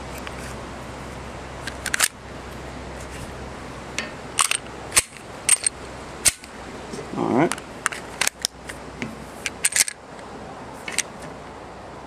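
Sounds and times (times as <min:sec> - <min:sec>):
pistol parts clicking into place: 0:04.4 - 0:06.5, 0:09.4 - 0:10.0, 0:10.9 - 0:11.1.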